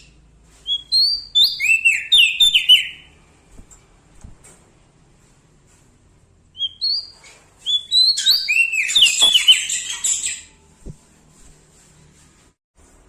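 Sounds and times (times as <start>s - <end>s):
bird singing chirps and whistles: 0.6s - 3.2s, 6.6s - 11.0s.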